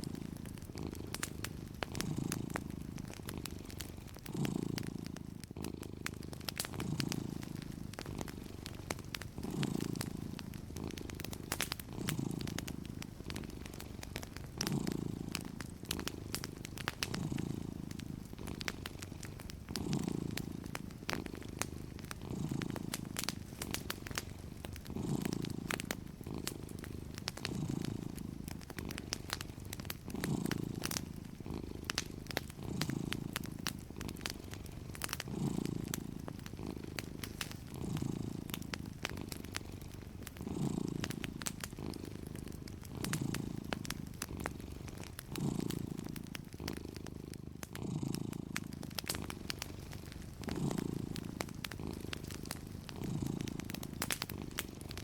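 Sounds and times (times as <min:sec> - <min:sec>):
cat purring: 0:00.0 - 0:55.0
wood fire crackling: 0:00.0 - 0:55.0.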